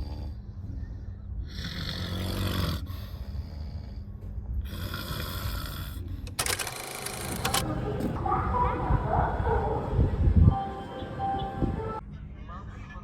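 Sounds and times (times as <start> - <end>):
men snoring: 1.5 - 4.0, 4.6 - 6.0.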